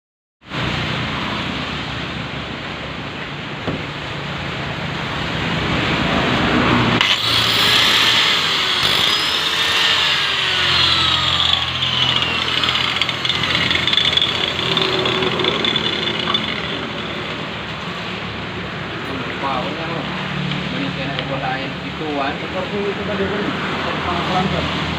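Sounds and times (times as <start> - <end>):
angle grinder cutting wood: 7.0 - 18.4.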